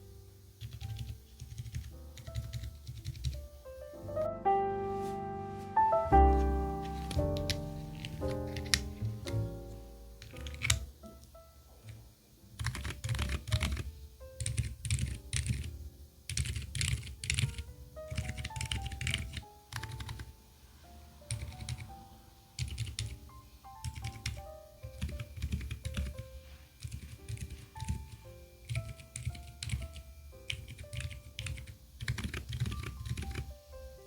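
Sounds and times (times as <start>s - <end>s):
soft background music: 0.0s - 34.0s
mechanical keyboard typing: 0.6s - 3.4s, 6.9s - 9.5s, 10.2s - 10.9s, 12.6s - 20.3s, 21.3s - 21.9s, 22.6s - 33.5s.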